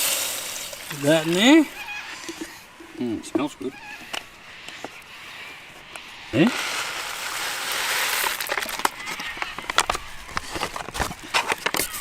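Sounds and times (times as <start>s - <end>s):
food sizzling in a pot: 0.0s - 1.6s.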